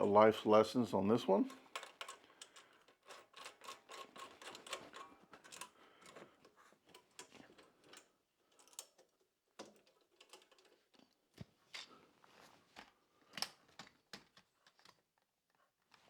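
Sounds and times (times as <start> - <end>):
faint mechanical clicks and rattles: 1.4 - 12.0.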